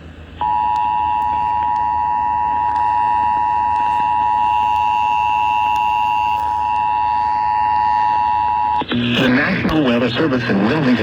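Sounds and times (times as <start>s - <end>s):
voice announcement: 8.8s - 11.0s.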